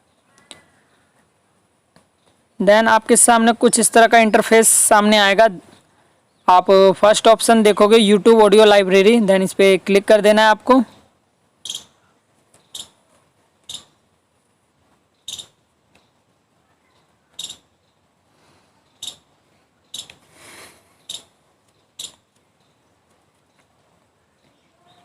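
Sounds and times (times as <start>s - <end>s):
sharp high-pitched clicks: 19.9s - 20.2s, 21.0s - 22.5s.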